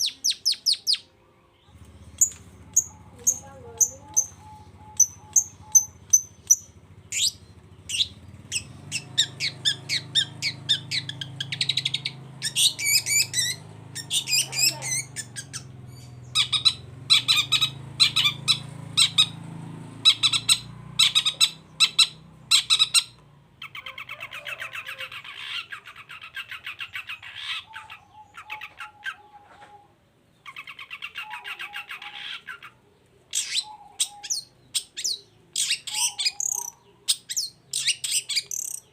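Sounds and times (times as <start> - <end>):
shrike singing harsh rasping calls: 2.2 - 19.4, 33.4 - 38.9.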